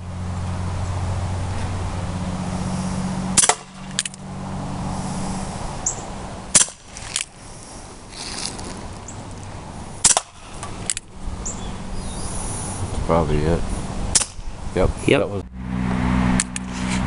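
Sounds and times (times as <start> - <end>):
bb revolver shots: 3.4 - 4.2, 10.0 - 11.0, 14.1 - 14.4.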